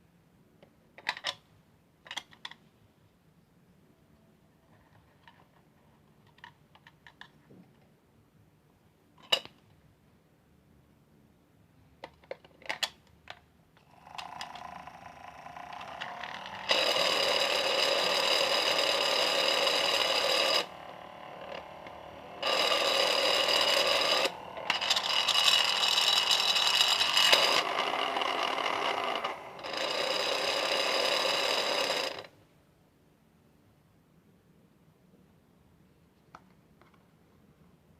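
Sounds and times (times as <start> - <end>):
washing machine humming: 14.2 - 31.6.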